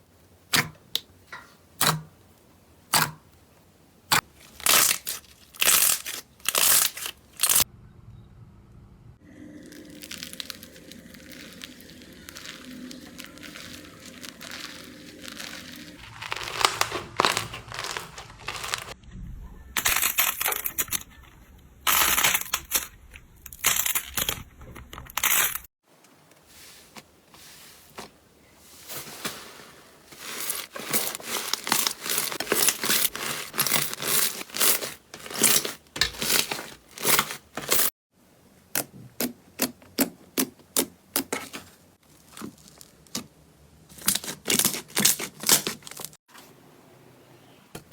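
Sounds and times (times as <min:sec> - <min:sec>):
slime crackling and popping: 0:04.1 - 0:07.7, 0:09.6 - 0:19.0.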